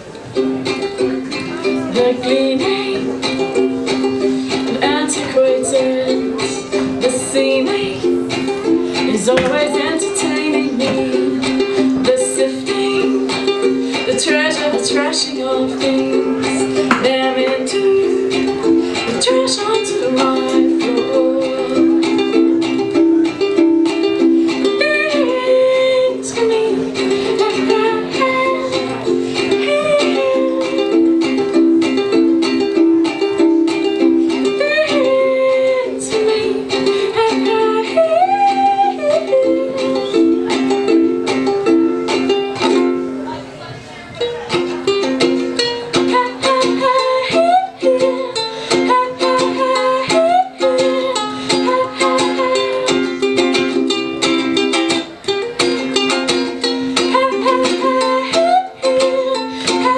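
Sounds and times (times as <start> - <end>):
ukulele strumming chords: 0.0 - 59.9
sliding melody line: 0.3 - 43.4.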